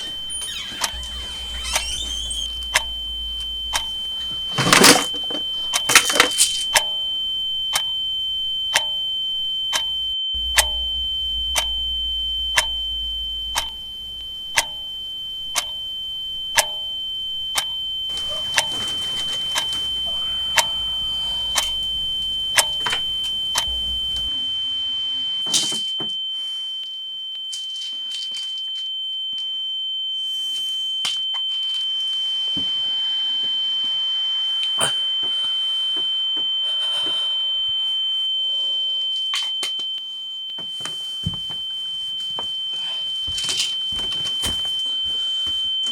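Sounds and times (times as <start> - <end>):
low hum: 0.0 - 25.4
scattered clicks: 17.6 - 21.9, 22.6 - 24.3
high-pitched tone: 18.2 - 26.0.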